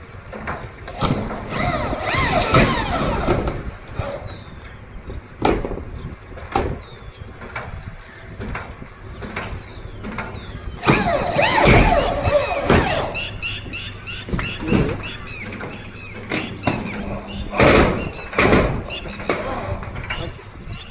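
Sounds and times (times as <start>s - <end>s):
knocks on metal roofing: 0.9s - 4.4s, 10.8s - 13.4s, 14.3s - 20.2s
metal sheet scraping squeal: 16.9s - 20.4s.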